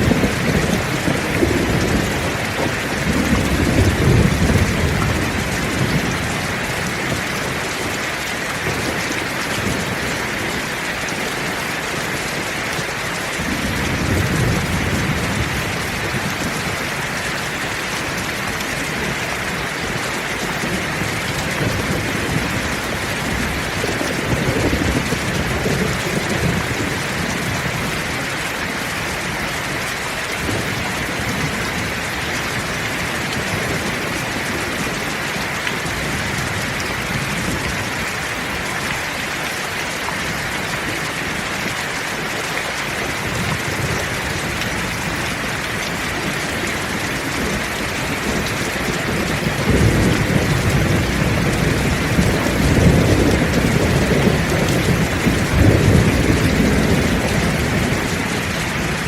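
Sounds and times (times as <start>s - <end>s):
thunder rumbling: 0.0s - 8.0s, 13.4s - 28.2s, 43.1s - 59.0s
heavy rain: 0.0s - 59.0s.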